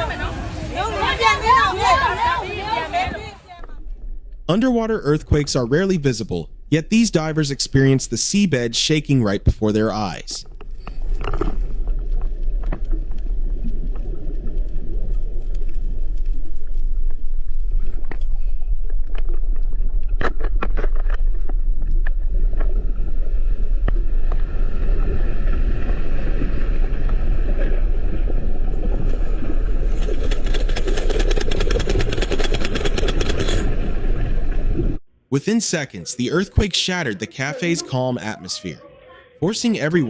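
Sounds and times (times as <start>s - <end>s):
deep underwater rumble: 10.4s - 35.0s
sharp clicks and crackle: 29.8s - 34.3s.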